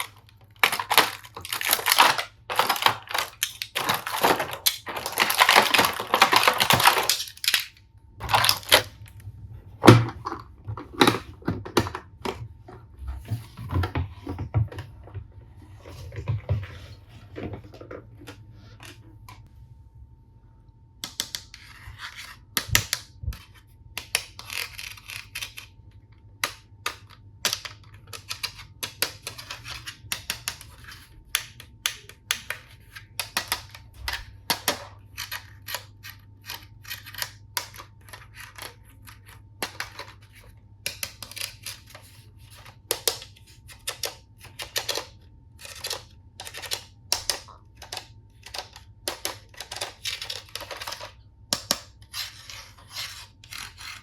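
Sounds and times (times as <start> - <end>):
plastic pieces clicking: 0.0 - 8.9, 40.8 - 54.0.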